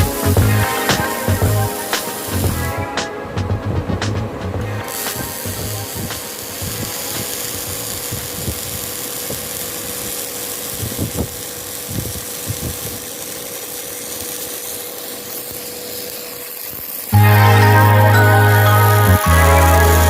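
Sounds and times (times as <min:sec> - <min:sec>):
welding machine noise: 0:00.0 - 0:03.1, 0:04.6 - 0:20.0
loud music: 0:00.0 - 0:06.4, 0:17.2 - 0:20.0.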